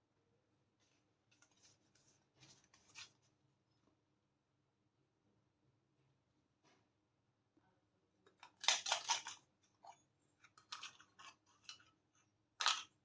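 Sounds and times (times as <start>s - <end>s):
plastic toy pieces clicking: 8.4s - 9.4s, 10.6s - 11.8s, 12.6s - 12.9s.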